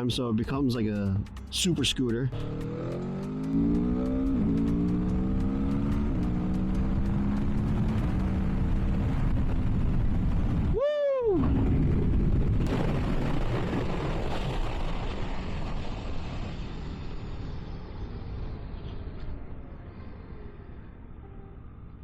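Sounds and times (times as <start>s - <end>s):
road noise: 0.0s - 12.7s, 15.1s - 22.0s
motorcycle engine revving: 2.3s - 10.5s
rushing wind: 5.8s - 20.8s.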